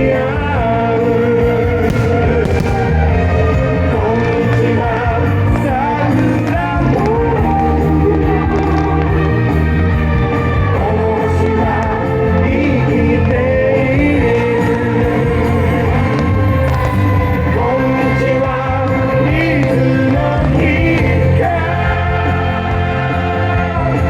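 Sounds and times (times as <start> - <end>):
person singing with band: 0.0 - 24.0.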